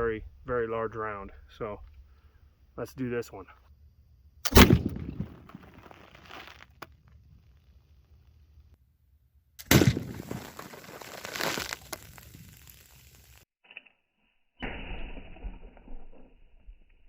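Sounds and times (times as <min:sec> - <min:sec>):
musket shot: 0:04.4 - 0:05.9, 0:09.6 - 0:10.5.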